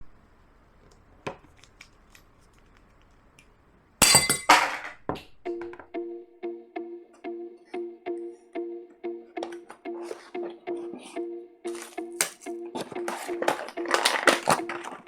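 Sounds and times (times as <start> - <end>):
glass crashing and clinking: 4.0 - 5.0
plucked-string music with beat: 5.2 - 15.0.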